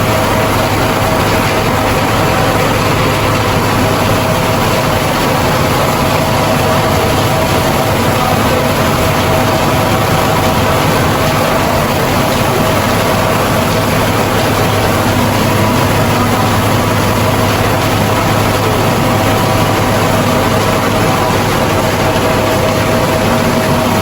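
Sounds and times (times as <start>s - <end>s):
rice milling machine drone: 0.0s - 24.0s.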